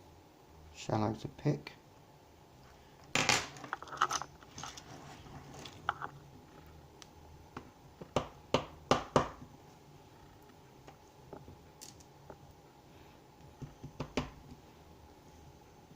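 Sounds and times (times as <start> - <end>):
metal parts rattling: 3.2 - 4.8.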